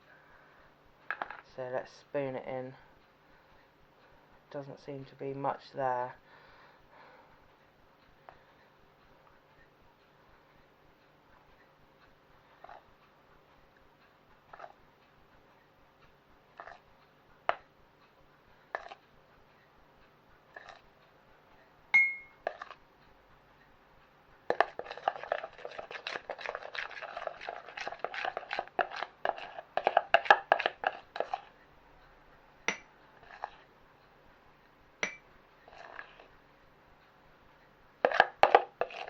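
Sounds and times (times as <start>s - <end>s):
spoon clinking on mug: 22.0s - 22.4s.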